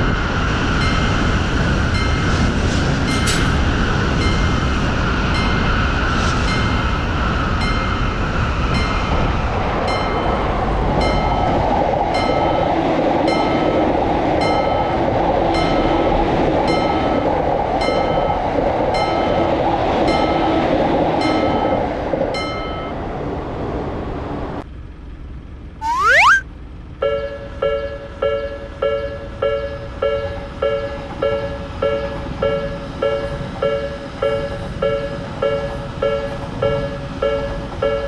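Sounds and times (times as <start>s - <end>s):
electric train passing: 0.0s - 24.2s
level crossing warning bell: 0.8s - 5.8s, 9.9s - 23.1s, 27.0s - 38.0s.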